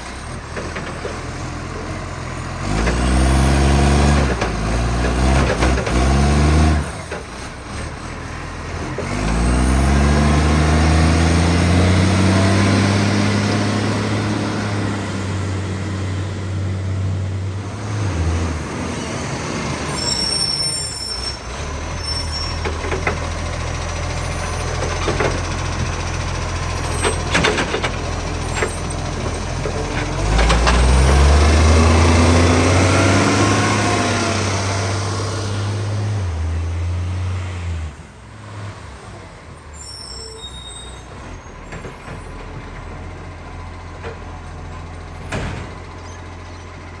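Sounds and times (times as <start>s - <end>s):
garbage truck diesel engine: 0.0s - 47.0s
short high squeal: 19.0s - 22.7s, 39.7s - 42.4s.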